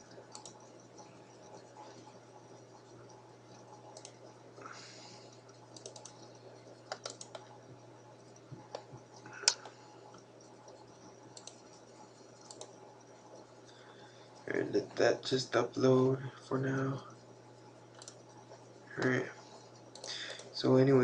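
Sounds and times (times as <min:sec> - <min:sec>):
low steady hum: 0:00.0 - 0:21.0
keyboard keys and mouse clicking: 0:00.1 - 0:01.1, 0:03.8 - 0:04.3, 0:05.4 - 0:07.5, 0:08.6 - 0:09.8, 0:10.4 - 0:12.8, 0:17.9 - 0:18.3, 0:19.9 - 0:20.5.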